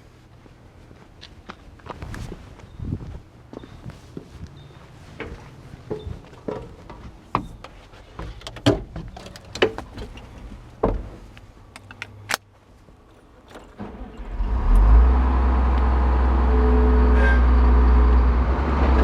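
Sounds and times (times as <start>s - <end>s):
sharp clicks and knocks: 5.2s - 12.5s
engine starting and running: 13.5s - 19.0s.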